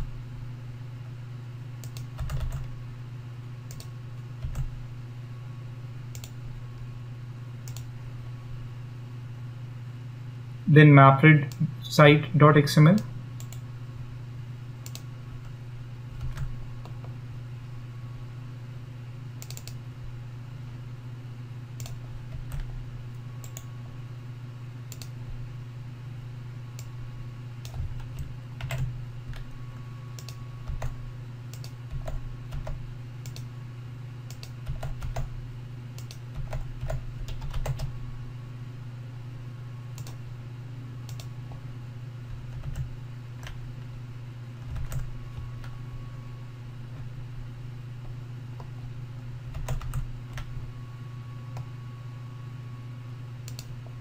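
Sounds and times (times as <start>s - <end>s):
steady low hum: 0.0s - 54.0s
keyboard typing: 1.8s - 2.7s, 3.7s - 4.7s, 16.2s - 17.2s, 21.8s - 22.8s, 27.6s - 29.5s, 30.2s - 33.5s, 34.3s - 35.3s, 36.0s - 37.9s, 41.1s - 41.6s, 42.3s - 43.6s, 44.6s - 45.8s, 49.5s - 50.5s.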